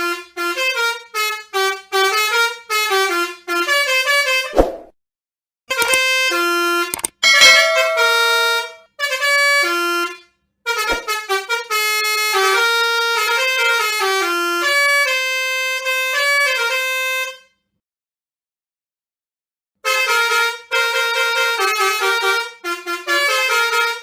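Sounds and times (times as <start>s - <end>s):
musical bus air horn: 0.0s - 4.4s, 8.0s - 17.6s, 19.8s - 24.0s.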